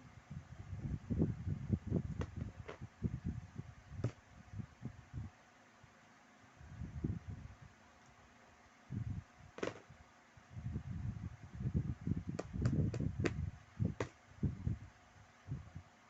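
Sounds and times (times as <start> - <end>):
toys thumping when set down: 9.6 - 9.8.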